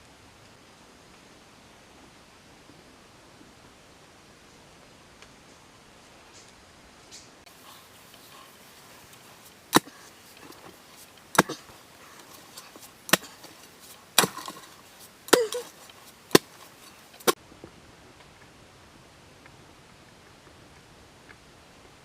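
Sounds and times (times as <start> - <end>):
blade chopping: 7.7 - 17.4.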